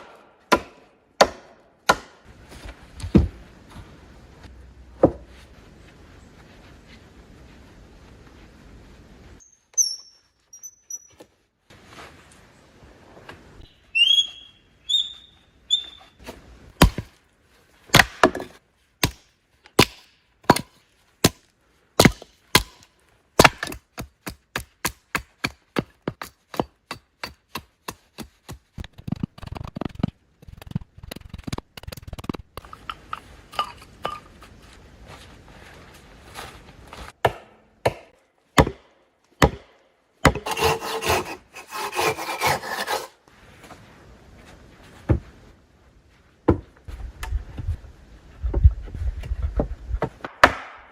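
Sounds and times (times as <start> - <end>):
hand tool chopping wood: 0.0 - 2.3, 16.8 - 17.2, 17.9 - 21.4, 22.0 - 30.1, 37.2 - 42.9
bird chirping: 9.4 - 11.2, 13.9 - 16.2.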